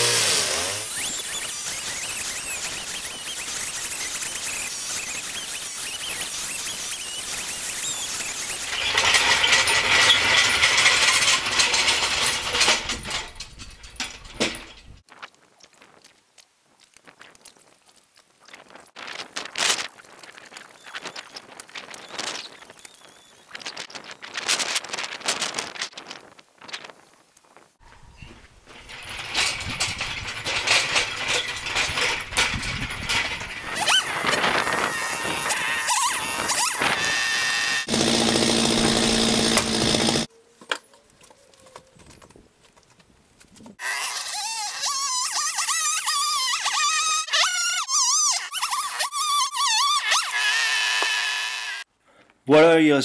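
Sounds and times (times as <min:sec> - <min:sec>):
chainsaw cutting wood: 0:00.0 - 0:12.2, 0:30.3 - 0:40.3, 0:43.8 - 0:46.6, 0:49.8 - 0:51.9
short squeal: 0:00.8 - 0:10.3, 0:33.6 - 0:37.9.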